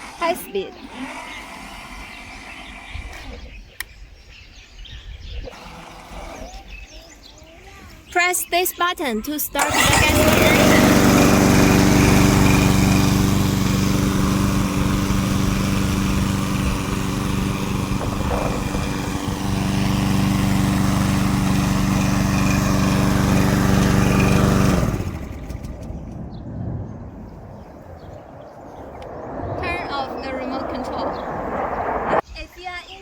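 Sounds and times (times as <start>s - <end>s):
lawn mower engine running: 9.6s - 26.4s.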